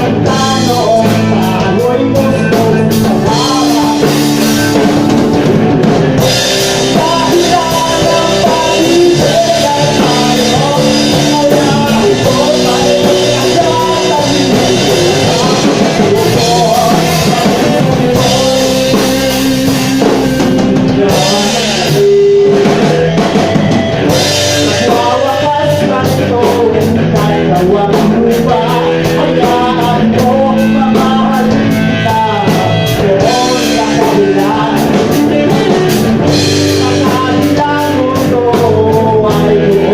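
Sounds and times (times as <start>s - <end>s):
drum kit: 0.0s - 39.9s
guitars: 0.0s - 39.9s
person singing: 0.0s - 39.9s.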